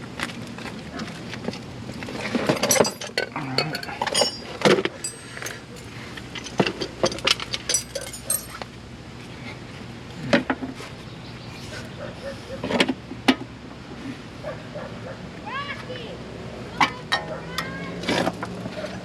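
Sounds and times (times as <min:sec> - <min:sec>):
metal tools clinking: 0:02.3 - 0:08.7.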